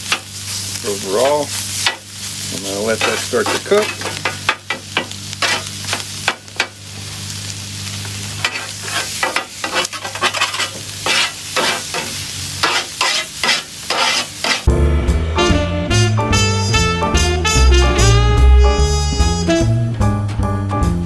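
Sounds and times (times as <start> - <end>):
sausage sizzling on a griddle: 0.0 - 14.7
metal chopper scraping and chopping: 2.7 - 6.4, 8.3 - 14.8.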